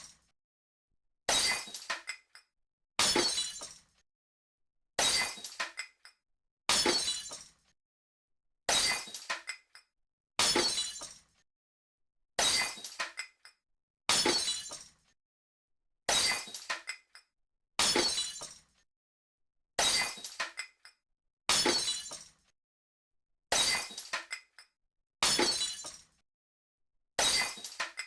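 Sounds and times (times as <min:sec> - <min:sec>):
glass smashing: 0:01.3 - 0:02.0, 0:03.0 - 0:03.8, 0:05.0 - 0:05.8, 0:06.7 - 0:07.5, 0:08.7 - 0:09.4, 0:10.4 - 0:11.2, 0:12.4 - 0:13.2, 0:14.1 - 0:14.9, 0:16.1 - 0:16.7, 0:17.8 - 0:18.6, 0:19.8 - 0:20.6, 0:21.5 - 0:22.3, 0:23.5 - 0:24.4, 0:25.2 - 0:26.0, 0:27.2 - 0:28.0
tinkling glass shards: 0:06.9 - 0:07.5, 0:21.7 - 0:22.3, 0:27.2 - 0:28.0.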